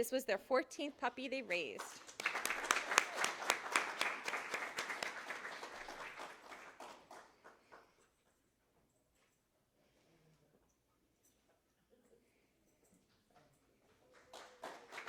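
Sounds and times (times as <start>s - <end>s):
audience applauding: 1.9s - 7.9s, 14.1s - 15.0s.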